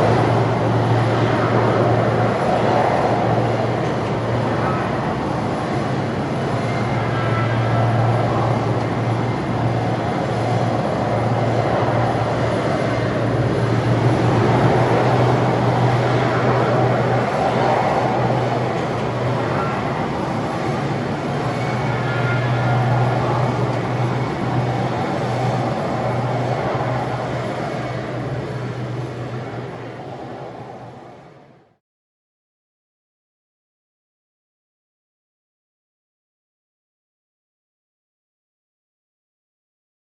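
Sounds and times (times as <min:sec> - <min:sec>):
aircraft engines rushing: 0:00.0 - 0:31.6.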